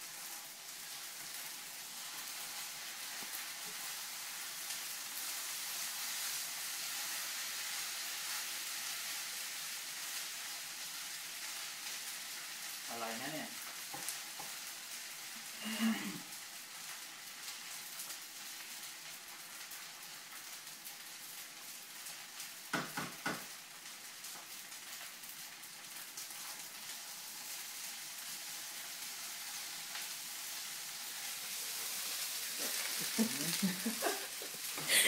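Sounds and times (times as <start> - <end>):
rice sizzling in a hot pan: 0.0 - 35.0.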